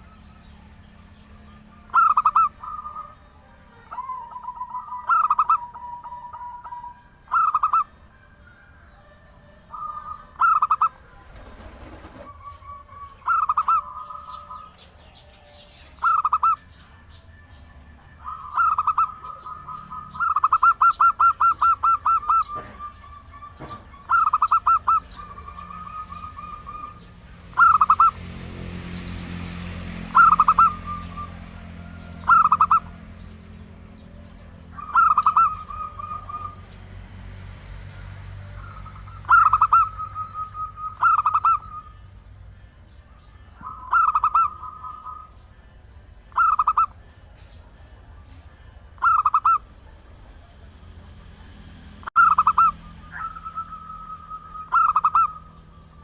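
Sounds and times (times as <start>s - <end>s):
dove cooing: 1.9s - 8.1s, 9.7s - 14.8s, 16.0s - 16.7s, 18.0s - 28.2s, 30.1s - 33.0s, 34.4s - 36.7s, 38.5s - 42.0s, 43.5s - 45.4s, 46.3s - 47.0s, 49.0s - 50.4s, 52.2s - 56.0s.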